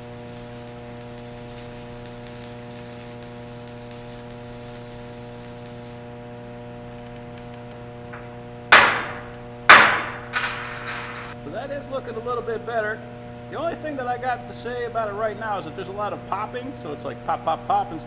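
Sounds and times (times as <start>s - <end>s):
welding arc crackling and popping: 0.0s - 6.1s, 6.8s - 11.4s
steady electrical hum: 0.0s - 18.0s
hammer striking metal: 8.2s - 11.4s.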